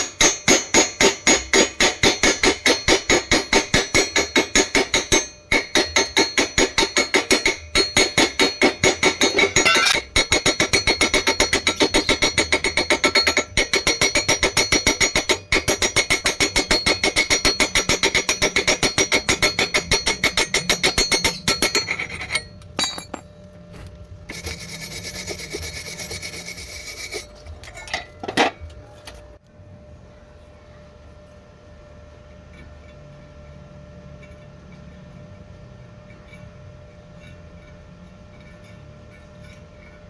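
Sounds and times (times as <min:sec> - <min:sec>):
metal rasping on steel pipe: 0:00.0 - 0:23.2, 0:24.3 - 0:28.2, 0:35.9 - 0:40.0.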